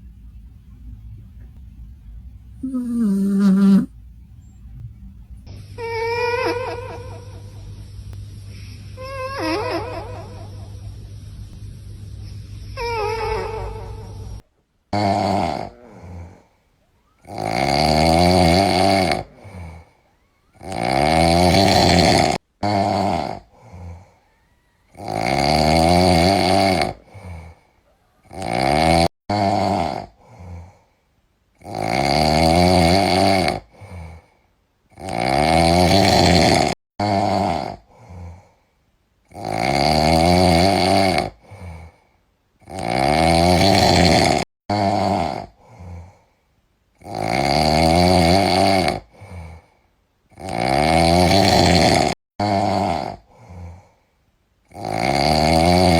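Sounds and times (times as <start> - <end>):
cat snoring: 2.6 - 4.0, 14.9 - 16.5, 17.2 - 24.3, 24.9 - 27.6, 28.2 - 30.8, 31.6 - 34.3, 34.9 - 38.5, 39.3 - 42.0, 42.6 - 46.2, 47.0 - 49.7, 50.3 - 53.9, 54.7 - 55.9.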